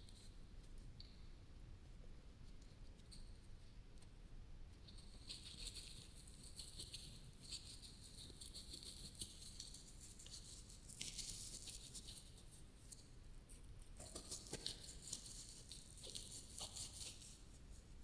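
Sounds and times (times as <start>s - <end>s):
crisp crackling and scratching: 4.9s - 18.0s.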